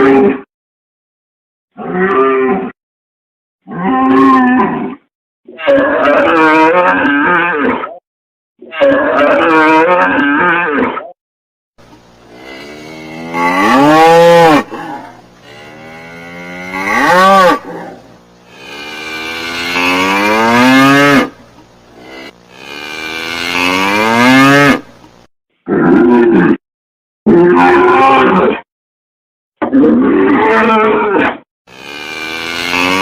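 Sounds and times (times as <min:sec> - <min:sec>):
cow mooing: 0:11.8 - 0:24.9, 0:31.7 - 0:33.0.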